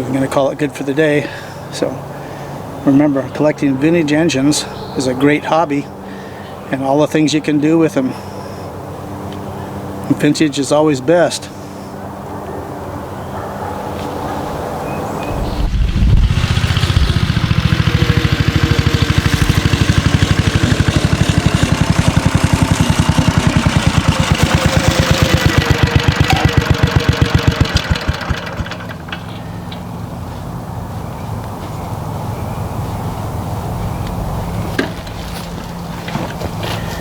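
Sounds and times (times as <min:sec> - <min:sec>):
scooter engine thumping: 0:15.4 - 0:30.4, 0:34.7 - 0:37.0.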